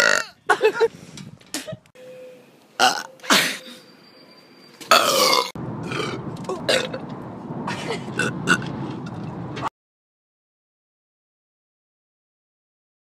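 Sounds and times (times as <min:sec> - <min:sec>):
person burping: 0:00.0 - 0:00.4, 0:02.8 - 0:03.5, 0:04.9 - 0:07.0, 0:07.8 - 0:08.7
steady background noise: 0:02.4 - 0:09.7.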